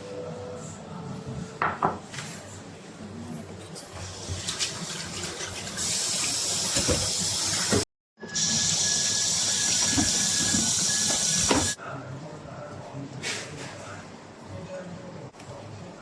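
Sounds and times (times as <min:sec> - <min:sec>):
water running from tap: 0:04.0 - 0:11.8.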